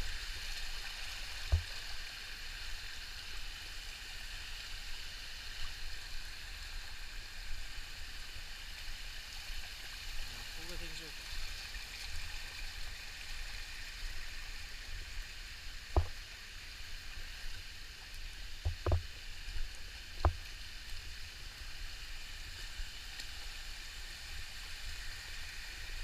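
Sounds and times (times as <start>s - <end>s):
stream and waterfall rushing: 1.4s - 9.2s, 12.4s - 26.0s
sharp knocks: 16.0s - 16.2s, 18.6s - 19.0s.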